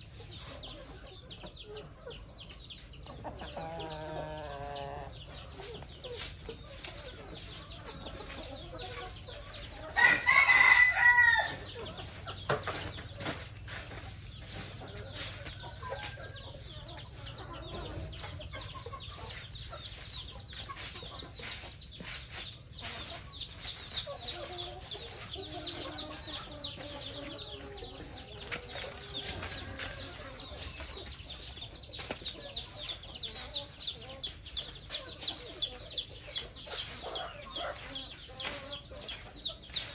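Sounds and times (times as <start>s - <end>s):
chickens clucking: 0.0s - 39.9s
rooster crowing: 10.0s - 11.6s.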